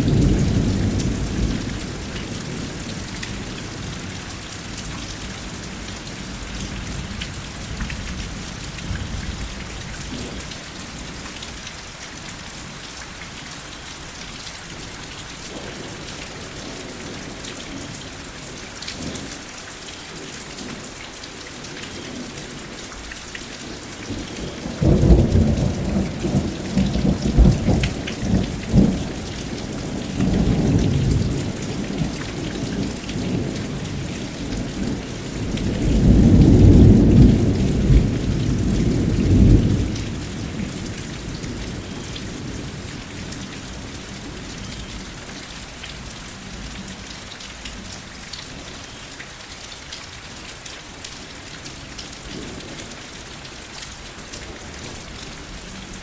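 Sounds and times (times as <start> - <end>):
steady rain falling: 0.0 - 56.0
thunder rumbling: 24.5 - 42.8.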